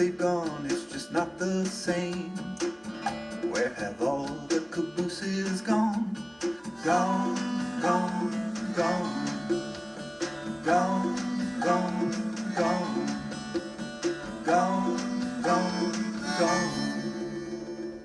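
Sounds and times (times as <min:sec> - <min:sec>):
acoustic strings plucked chords: 0:00.0 - 0:18.0.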